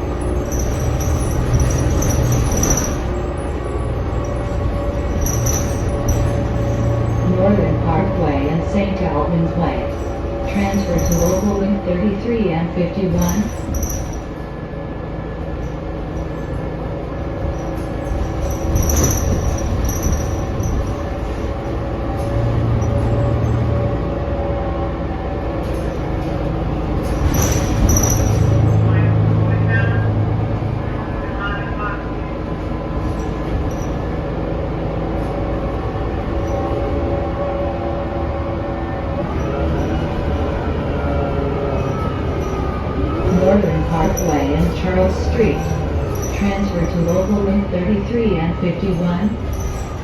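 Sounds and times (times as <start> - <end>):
bus engine drone: 0.0 - 50.0
high squeaks: 0.2 - 7.2, 9.9 - 11.8, 13.1 - 14.4, 17.4 - 21.4, 27.0 - 29.0
constant whine: 41.2 - 50.0.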